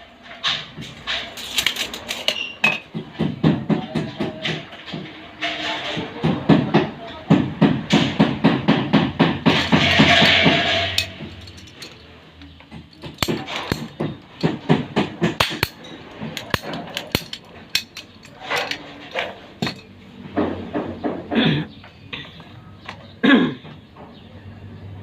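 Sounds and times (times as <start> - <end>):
tools knocking on plastic pipe fittings: 6.2 - 20.5.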